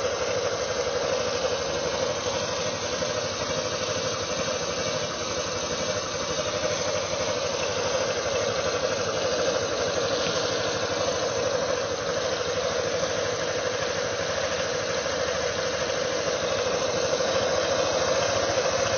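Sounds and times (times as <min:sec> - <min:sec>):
engine tapping knock: 0:00.0 - 0:18.9
scooter engine idling: 0:00.0 - 0:18.9.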